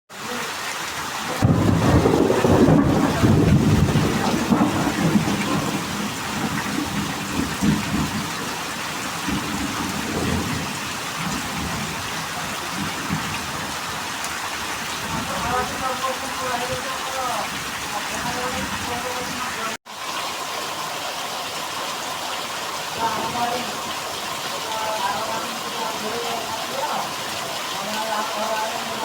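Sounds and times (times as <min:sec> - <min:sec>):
heavy rain pouring: 0:00.1 - 0:29.0
thunder rumbling: 0:01.4 - 0:13.8.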